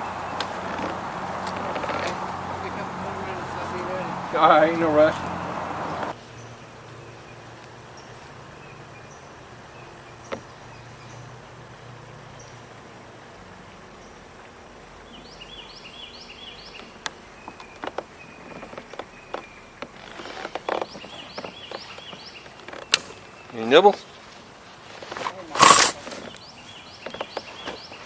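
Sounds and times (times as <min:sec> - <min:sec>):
birds chirping: 0:00.0 - 0:28.0
high insect buzz: 0:00.0 - 0:28.0
sharp clicks and knocks: 0:16.8 - 0:23.3.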